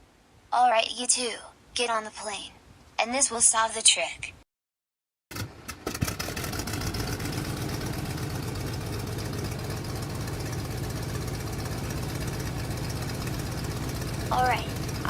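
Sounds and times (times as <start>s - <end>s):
airplane engine droning: 5.4s - 15.0s.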